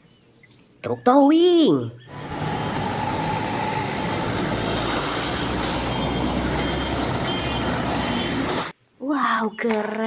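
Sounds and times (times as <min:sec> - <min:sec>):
vehicle engine rumble: 0:02.1 - 0:08.7.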